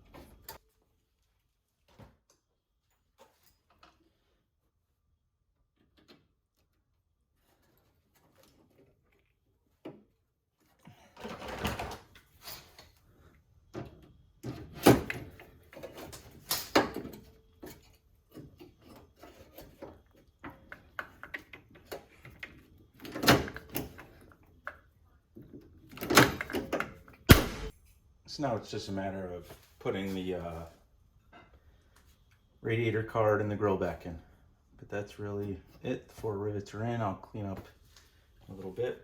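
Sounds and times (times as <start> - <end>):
sharp loud rivet snaps: 27.3 - 27.7.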